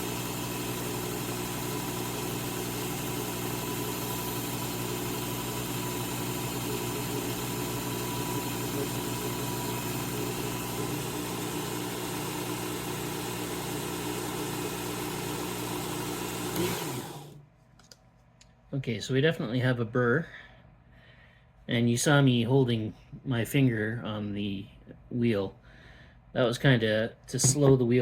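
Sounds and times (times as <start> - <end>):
belt grinder running: 0.0 - 17.4
motor winding down: 0.0 - 17.4.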